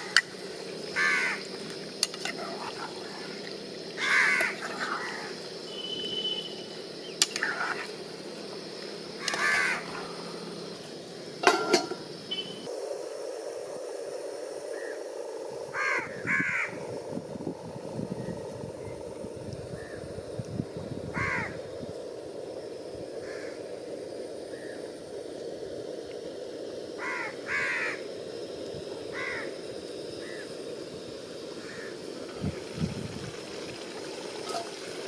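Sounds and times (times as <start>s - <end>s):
crows cawing: 1.0s - 1.4s, 4.0s - 5.3s, 9.2s - 9.9s, 15.8s - 16.8s, 21.1s - 21.6s, 23.2s - 23.6s, 27.0s - 28.0s, 29.1s - 29.5s, 31.6s - 32.0s.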